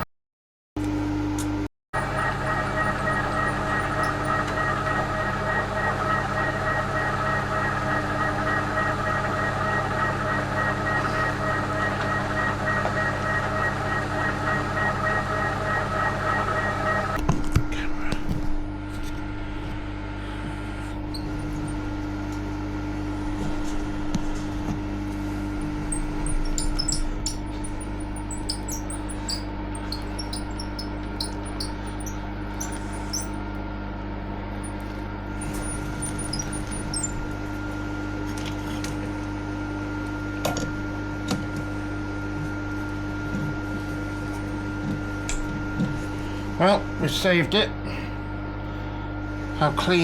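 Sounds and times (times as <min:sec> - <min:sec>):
drill bit squeaking in metal: 0:02.0 - 0:16.2, 0:21.0 - 0:21.9, 0:25.6 - 0:33.5, 0:34.6 - 0:37.5
milling machine running: 0:02.0 - 0:17.2, 0:24.4 - 0:39.0.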